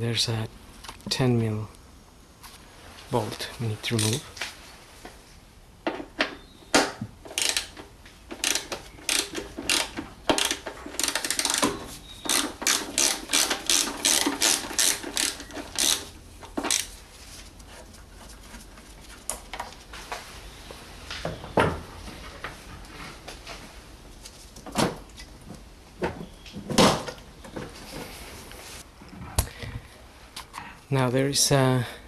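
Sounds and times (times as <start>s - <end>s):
ratchet wrench clicking: 7.3s - 7.8s, 8.4s - 11.7s, 12.3s - 16.1s, 16.7s - 16.9s.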